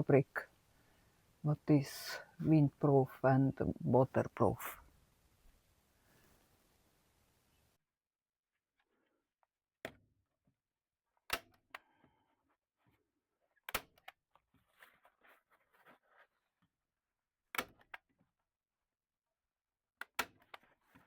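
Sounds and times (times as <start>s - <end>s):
fabric rustling: 14.5s - 16.6s.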